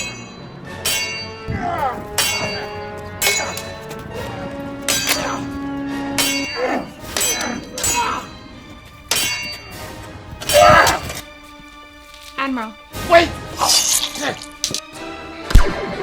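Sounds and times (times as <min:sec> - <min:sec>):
metallic clanging strikes: 0:00.0 - 0:11.5.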